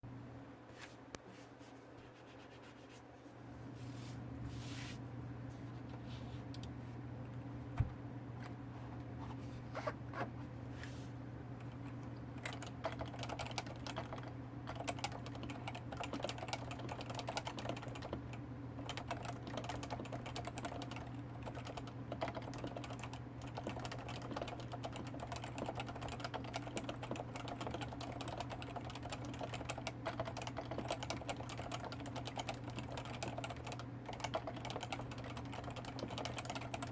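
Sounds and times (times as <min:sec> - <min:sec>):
soft keyboard keystrokes: 0:11.6 - 0:36.9.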